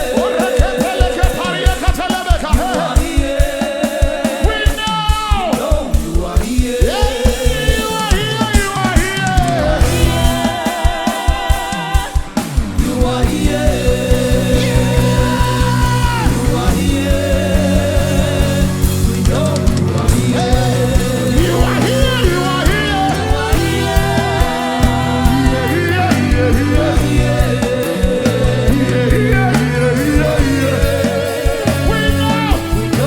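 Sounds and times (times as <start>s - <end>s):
band with fast drum beat: 0.0s - 33.0s
voices singing with vibrato: 0.0s - 33.0s.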